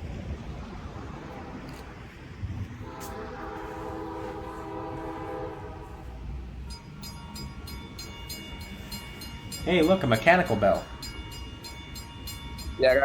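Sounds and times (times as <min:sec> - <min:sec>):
train rumbling: 0:00.0 - 0:13.0
locomotive air horn chord: 0:02.8 - 0:12.7
locomotive bell ringing: 0:06.6 - 0:13.0.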